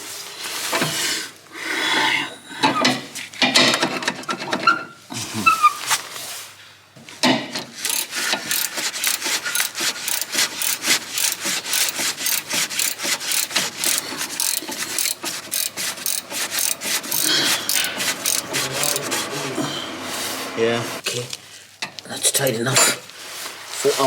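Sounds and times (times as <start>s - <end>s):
ratchet wrench clicking: 7.8s - 19.1s.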